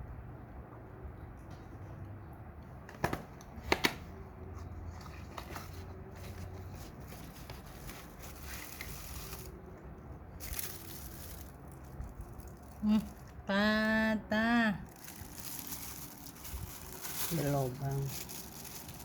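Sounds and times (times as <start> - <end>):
plastic wrapping crinkling: 5.3 - 9.6, 10.4 - 13.3, 14.9 - 19.0.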